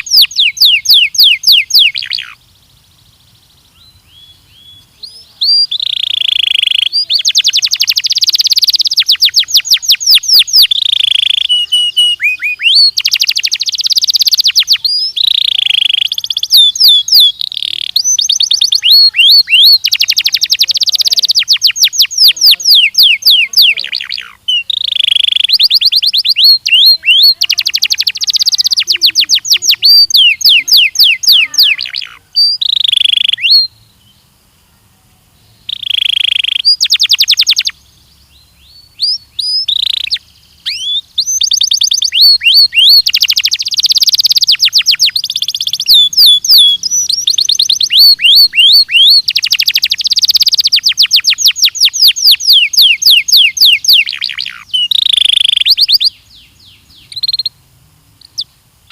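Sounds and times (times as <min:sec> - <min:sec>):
canary singing trills: 0:00.0 - 0:58.9.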